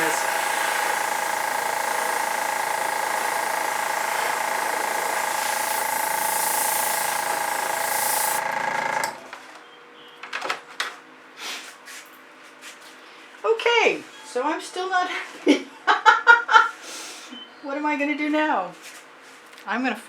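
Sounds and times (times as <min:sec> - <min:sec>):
hair dryer whining: 0:00.0 - 0:09.5.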